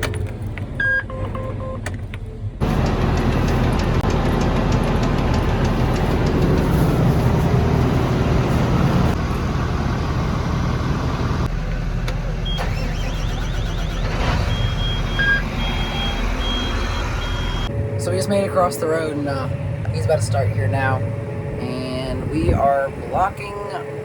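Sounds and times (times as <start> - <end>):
heavy machinery engine running: 2.4 - 24.0
electronic warning beeps: 12.4 - 17.7.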